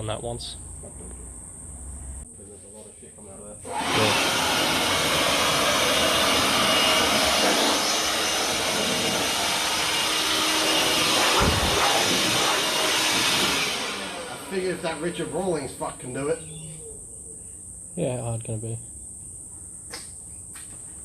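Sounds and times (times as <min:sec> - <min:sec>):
blown air rushing: 0:04.1 - 0:15.5
dull thump: 0:11.3 - 0:12.5.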